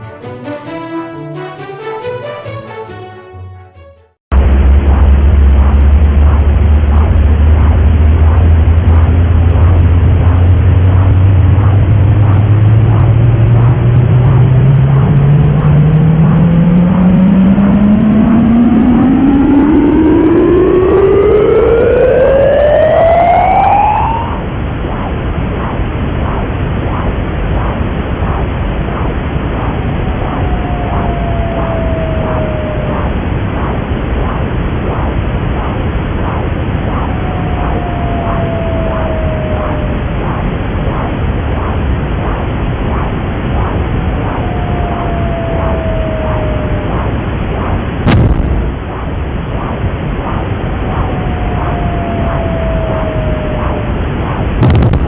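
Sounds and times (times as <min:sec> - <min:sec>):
short downward sliding tone: 0:00.0 - 0:11.4, 0:12.0 - 0:24.4
loud hiss with rising tone: 0:00.0 - 0:24.6.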